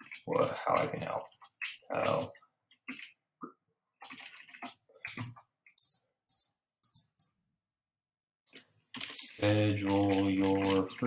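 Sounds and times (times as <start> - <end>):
computer keyboard typing: 4.0 - 5.2, 8.5 - 11.0.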